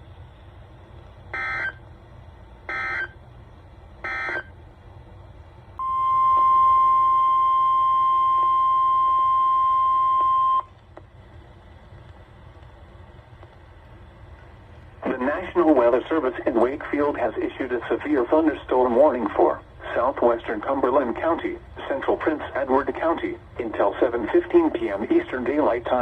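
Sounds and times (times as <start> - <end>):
steady alarm tone: 1.3 - 1.8, 2.7 - 3.2, 4.0 - 4.5, 5.8 - 10.6.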